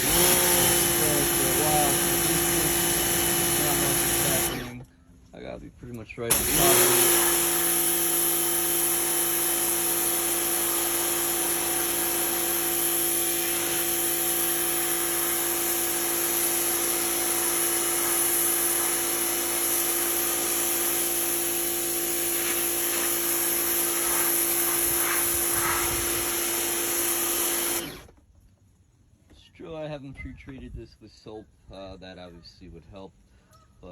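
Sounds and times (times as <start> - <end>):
pressure washer motor humming: 0.0 - 4.8, 6.3 - 28.1
water jet hissing: 0.0 - 4.8, 6.3 - 28.0.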